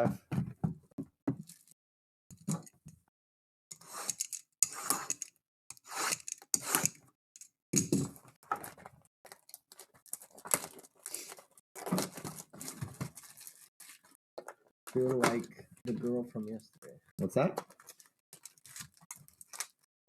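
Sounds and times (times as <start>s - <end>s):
packaging tearing and crinkling: 9.3s - 14.2s, 17.7s - 19.8s.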